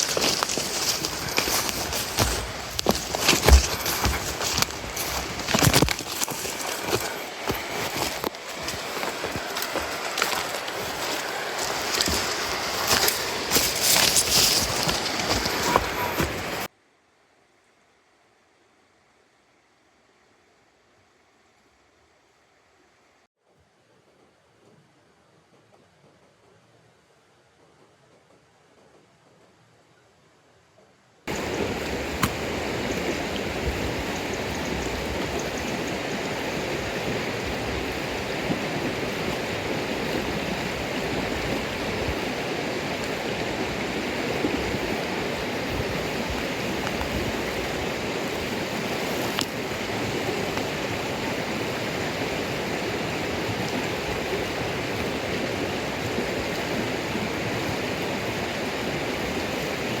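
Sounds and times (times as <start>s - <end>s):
running water rushing: 0.0s - 16.7s, 31.3s - 60.0s.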